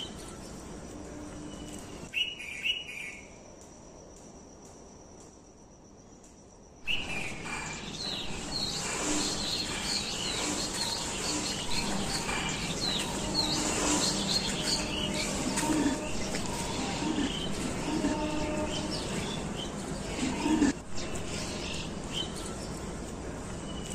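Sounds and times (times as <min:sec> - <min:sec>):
birds chirping: 0:06.8 - 0:23.9.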